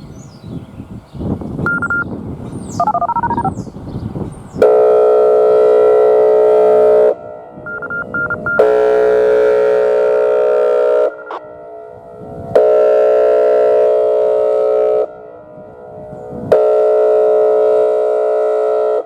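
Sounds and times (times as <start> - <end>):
touch-tone beeps: 1.7 - 2.1, 2.8 - 3.5, 7.7 - 9.0, 11.0 - 11.4
warning siren air horn blasts: 4.6 - 19.0.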